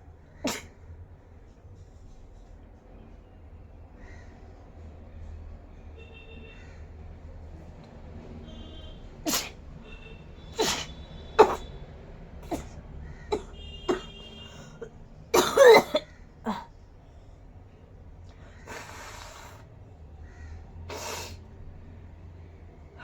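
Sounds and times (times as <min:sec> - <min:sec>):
person coughing: 0:10.6 - 0:11.6, 0:12.4 - 0:12.8, 0:13.4 - 0:16.7.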